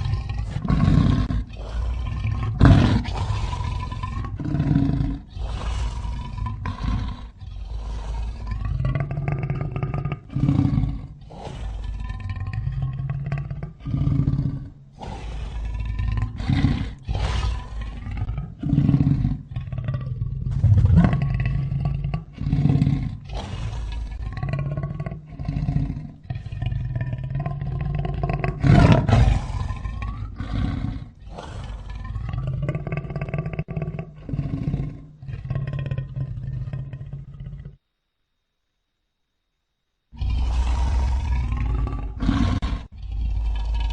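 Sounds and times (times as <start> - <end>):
big cat roars and growls: 0.0 - 37.8, 40.2 - 43.9
deep rumble: 20.5 - 21.4.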